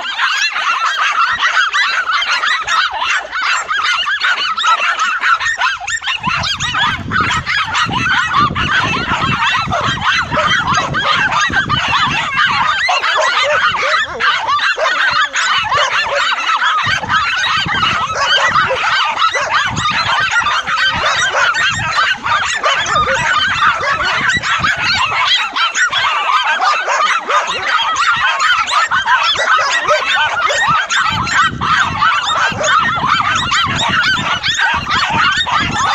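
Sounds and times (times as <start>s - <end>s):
dogs barking and yelping: 0.0s - 35.9s
honk-like cries: 0.0s - 35.9s.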